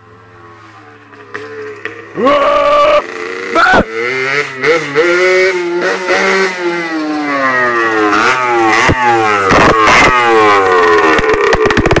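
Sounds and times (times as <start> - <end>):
two-stroke engine revving: 1.0 - 12.0
engine exhaust cracks: 1.1 - 2.2, 8.8 - 10.2, 11.0 - 12.0.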